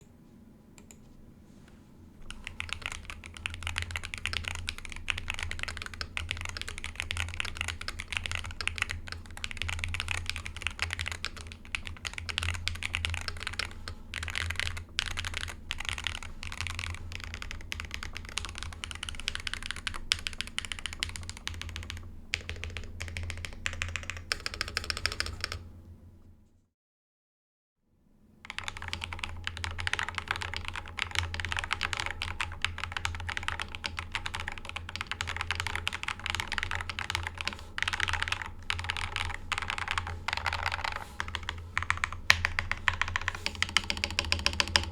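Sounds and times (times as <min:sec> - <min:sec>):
fast keyboard typing: 0:02.2 - 0:25.6, 0:28.5 - 0:44.9.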